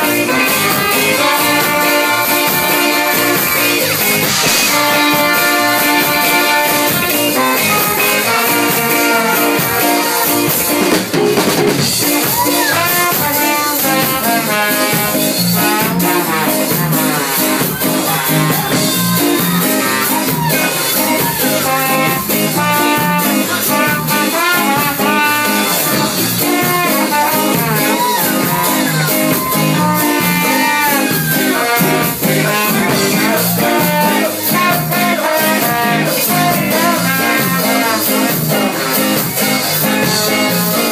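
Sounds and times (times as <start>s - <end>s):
live band playing: 0.0s - 40.9s.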